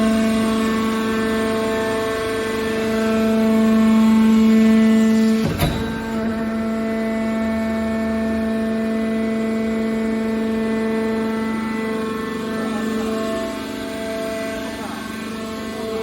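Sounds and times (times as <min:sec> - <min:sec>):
baler humming whine: 0:04.6 - 0:13.4
metallic clank: 0:05.3 - 0:07.6.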